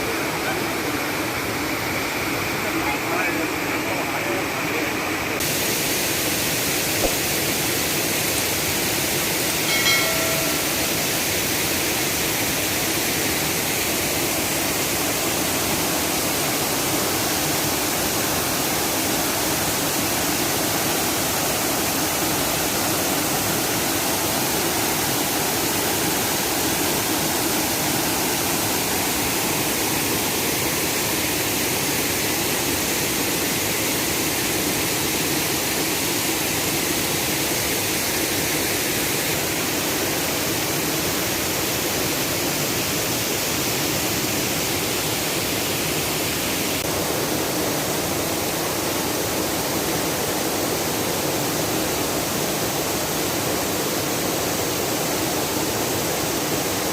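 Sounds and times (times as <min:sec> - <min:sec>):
waterfall rushing: 0:00.0 - 0:56.9
brief high tone: 0:09.6 - 0:11.2.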